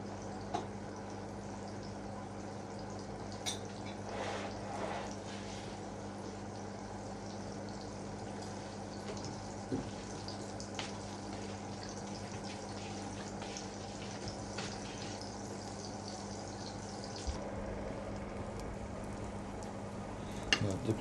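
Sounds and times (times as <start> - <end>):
margarine sizzling in a frying pan: 3.3 - 17.4
low hum: 17.2 - 21.0.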